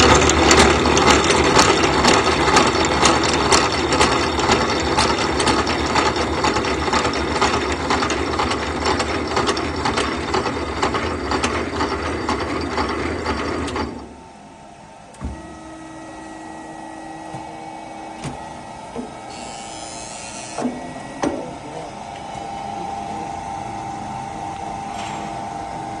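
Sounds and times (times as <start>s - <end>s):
milling machine rattling chatter: 0.0s - 14.1s
machine humming: 0.0s - 26.0s.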